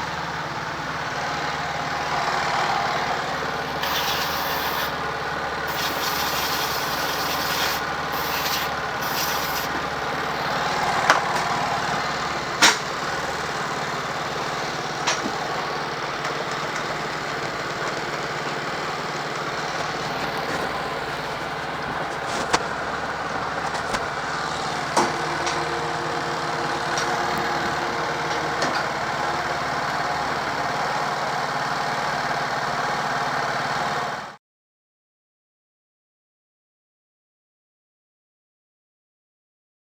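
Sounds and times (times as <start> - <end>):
scooter engine idling: 0.0 - 34.3.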